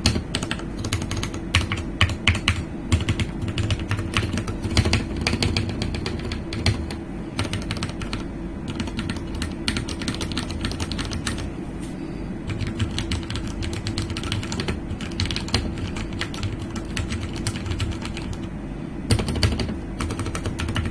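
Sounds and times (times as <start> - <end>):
mechanical keyboard typing: 0.0 - 11.5, 12.5 - 18.5, 19.1 - 20.9.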